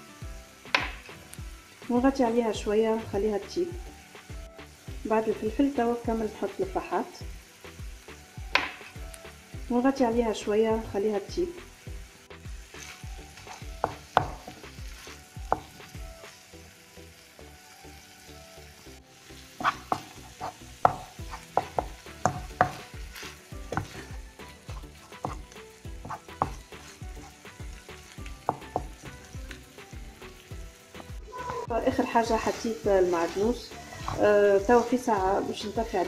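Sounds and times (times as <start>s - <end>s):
meat frying in a pan: 0.0s - 36.0s
utensil knocking against pan: 8.5s - 8.8s, 13.5s - 14.6s, 20.8s - 22.9s, 25.2s - 26.7s, 28.4s - 29.0s.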